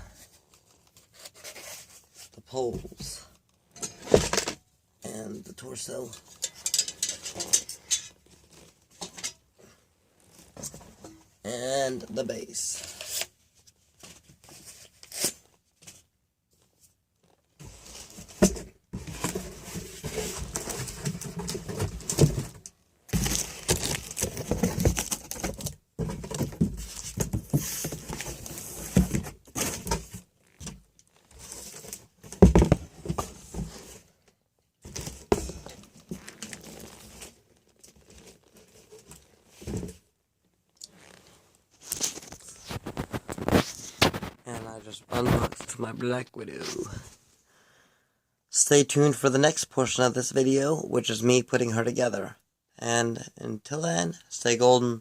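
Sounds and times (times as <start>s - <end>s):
box packaging rustling and tearing: 19.2s - 30.2s, 36.0s - 39.5s, 41.8s - 44.4s.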